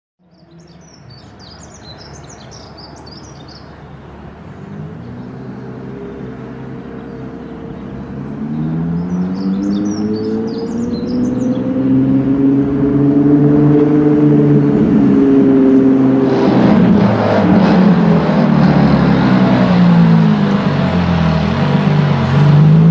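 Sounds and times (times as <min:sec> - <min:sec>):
small birds chirping: 0:00.2 - 0:12.0
sports car engine approaching: 0:00.3 - 0:22.9.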